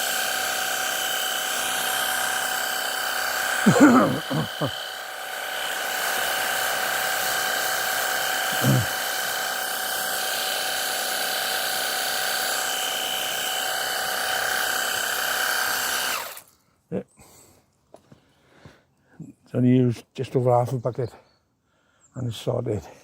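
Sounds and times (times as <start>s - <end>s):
pressure washer motor whine: 0.0s - 16.4s.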